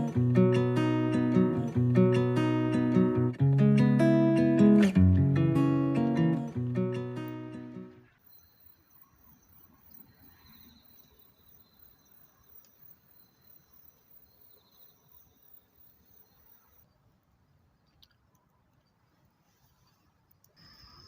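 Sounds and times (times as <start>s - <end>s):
acoustic guitar music: 0.0s - 8.1s
insects trilling: 8.1s - 17.0s.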